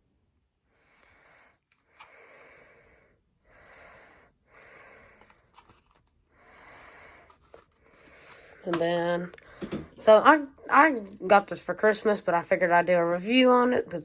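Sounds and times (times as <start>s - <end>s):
person breathing: 0.6s - 8.7s, 9.3s - 10.0s.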